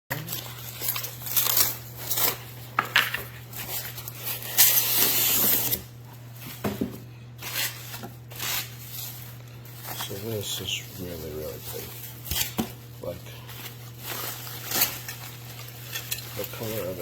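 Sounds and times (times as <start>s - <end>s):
rustling and scraping handling: 0.1s - 17.0s.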